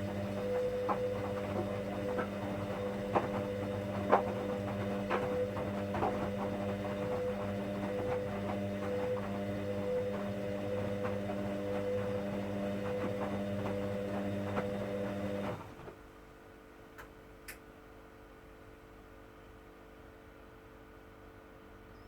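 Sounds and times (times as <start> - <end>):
washing machine drum motor humming: 0.0 - 16.0.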